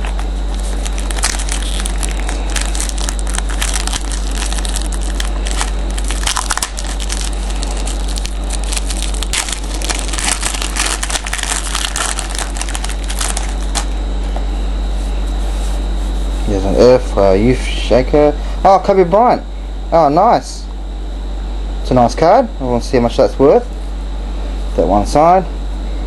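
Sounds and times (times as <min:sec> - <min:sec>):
plastic wrapper crinkling: 0:00.0 - 0:13.9
steady hum: 0:00.0 - 0:26.0.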